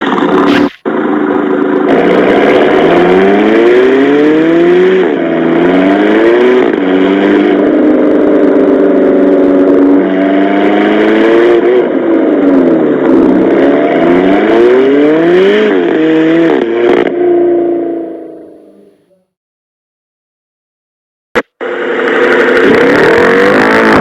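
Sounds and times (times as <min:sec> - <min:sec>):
car engine accelerating: 0:00.0 - 0:19.2, 0:21.6 - 0:24.0.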